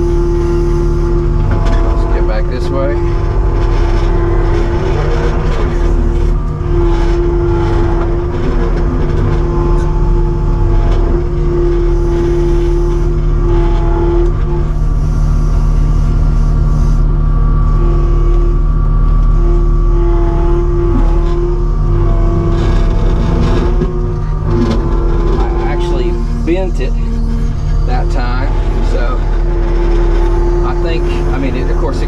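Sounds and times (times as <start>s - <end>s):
diesel engine running: 0.0s - 32.0s
steady whine: 0.0s - 32.0s.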